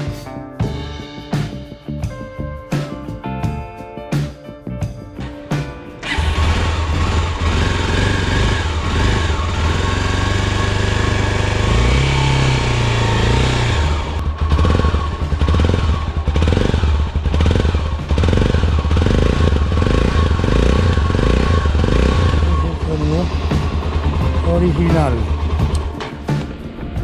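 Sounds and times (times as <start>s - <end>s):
motorcycle engine idling and revving: 6.0s - 27.0s.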